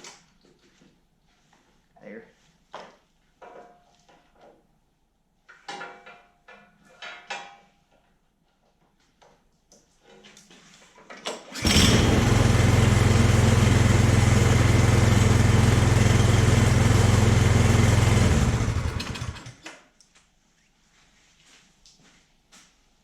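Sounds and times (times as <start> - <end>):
snowblower engine running: 11.6 - 19.6.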